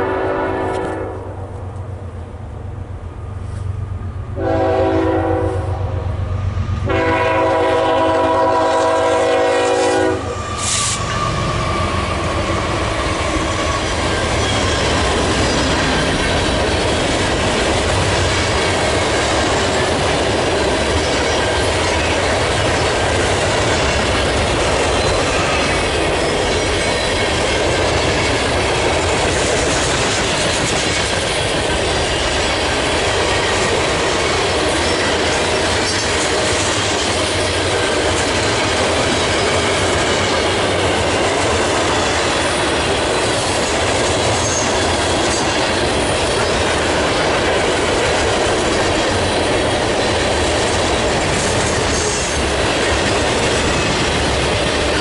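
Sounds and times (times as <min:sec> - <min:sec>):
locomotive air horn blasts: 0:00.0 - 0:01.4, 0:04.4 - 0:06.0, 0:06.8 - 0:11.4
train rolling past rumble: 0:00.0 - 0:55.0
wheels clacking on rail joints: 0:10.4 - 0:55.0.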